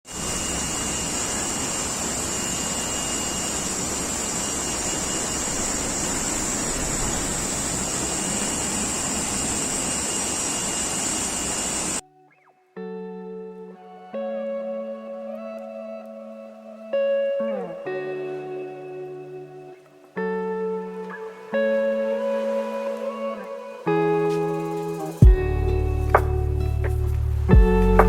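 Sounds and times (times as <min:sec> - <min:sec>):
waterfall roaring: 0:00.1 - 0:12.0.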